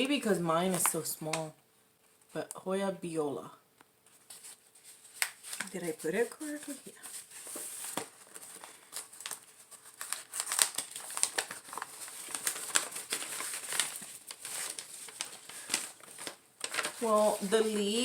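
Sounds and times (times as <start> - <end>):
plastic packaging crinkling: 4.1 - 18.0.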